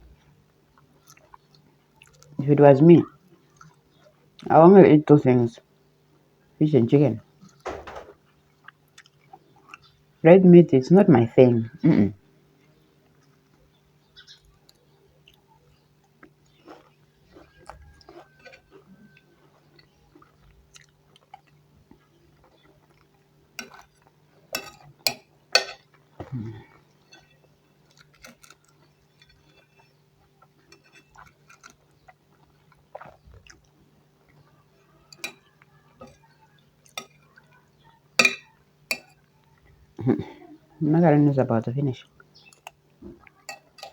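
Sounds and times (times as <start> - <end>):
wet chewing and mouth smacks: 0.2 - 2.4, 3.3 - 4.5, 8.2 - 10.0, 13.0 - 25.2, 26.7 - 34.5.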